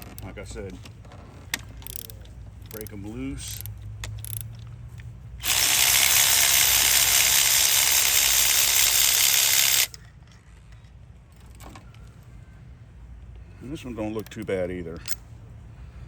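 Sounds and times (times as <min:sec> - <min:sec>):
cordless electric ratchet buzzing: 0:05.4 - 0:10.0.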